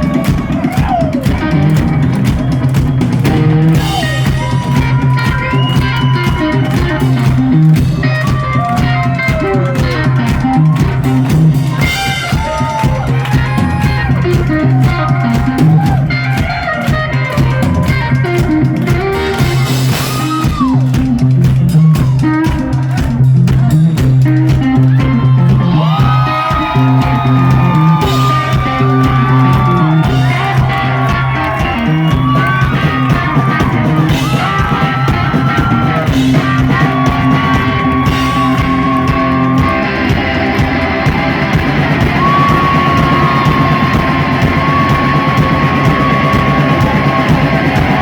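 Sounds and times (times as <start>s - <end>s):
driving drumming: 0.0s - 48.0s
electric guitar lead lines: 24.0s - 48.0s.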